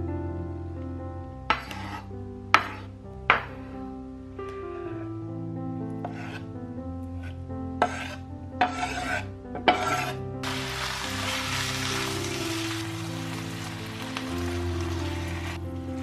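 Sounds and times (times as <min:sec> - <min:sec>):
background music: 0:00.0 - 0:16.0
rasping scraping sounds: 0:01.5 - 0:02.9, 0:06.0 - 0:06.4, 0:07.2 - 0:10.2.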